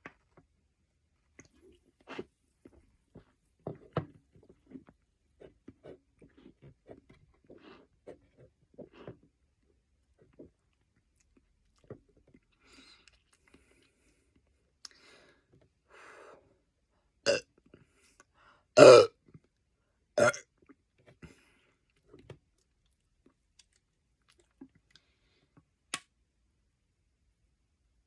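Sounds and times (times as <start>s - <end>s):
man belching: 18.8s - 19.1s, 20.2s - 20.4s.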